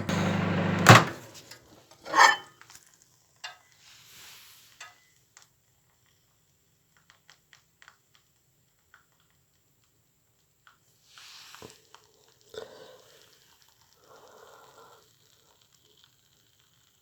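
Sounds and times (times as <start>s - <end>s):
short hum: 0.0s - 1.4s.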